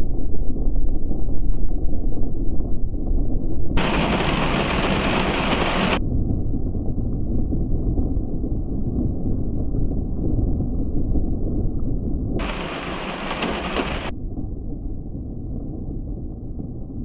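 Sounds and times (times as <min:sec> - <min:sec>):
thunder rumbling: 0:03.8 - 0:17.0.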